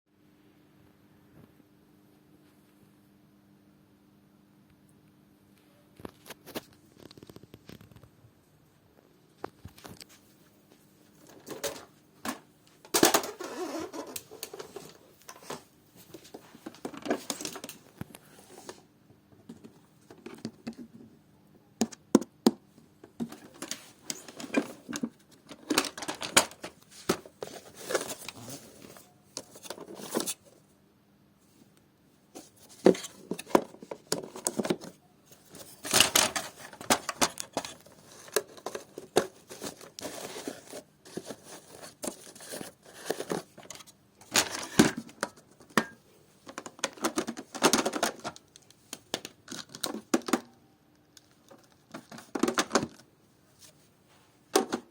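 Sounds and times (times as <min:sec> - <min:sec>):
plastic vacuum parts clicking: 0:23.2 - 0:28.5, 0:35.5 - 0:50.6.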